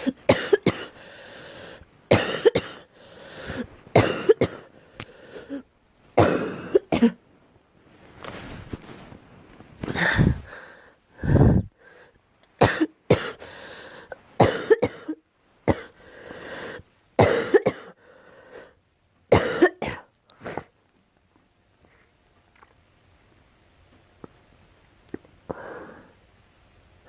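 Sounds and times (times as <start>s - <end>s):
girl coughing: 0.0s - 1.0s, 2.1s - 2.9s, 4.0s - 4.7s, 6.2s - 7.2s, 12.6s - 13.4s, 14.4s - 16.0s, 17.2s - 18.0s, 19.3s - 20.7s
faint breaths: 0.9s - 1.9s, 2.9s - 3.8s, 4.7s - 5.7s, 9.9s - 12.2s, 13.4s - 14.2s, 15.9s - 16.9s, 18.0s - 18.8s, 25.5s - 26.3s.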